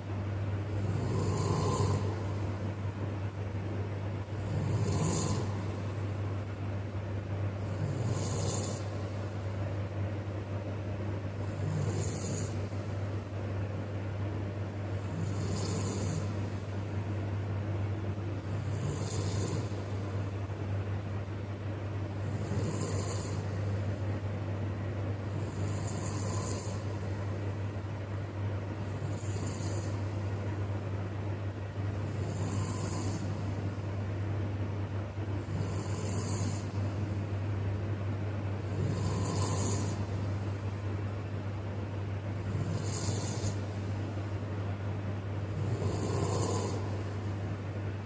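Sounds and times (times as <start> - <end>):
steady low hum: 0.0 - 48.0
man snoring: 0.7 - 2.8, 4.2 - 6.2, 7.5 - 9.4, 11.2 - 13.2, 15.0 - 16.9, 18.4 - 20.4, 22.1 - 23.9, 25.2 - 27.2, 28.7 - 30.4, 31.9 - 33.8, 35.4 - 37.1, 38.6 - 40.7, 42.3 - 44.1, 45.4 - 47.5.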